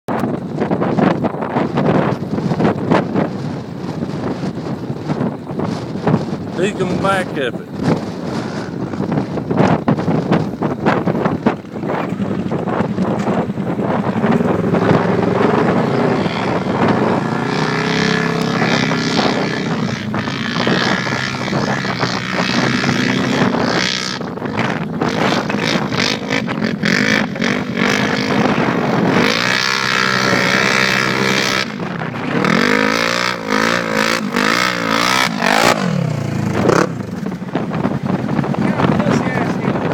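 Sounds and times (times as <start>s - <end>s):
engine revving hard: 14.2s - 37.1s.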